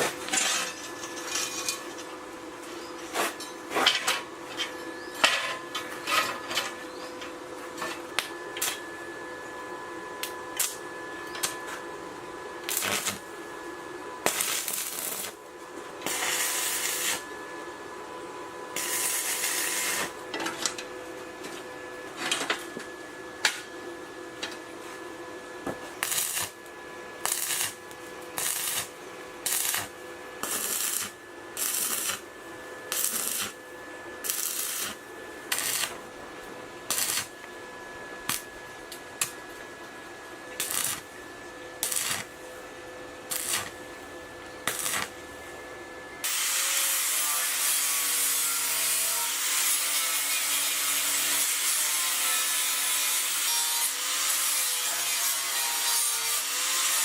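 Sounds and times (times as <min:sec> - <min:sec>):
steady hum: 0:06.5 - 0:46.2.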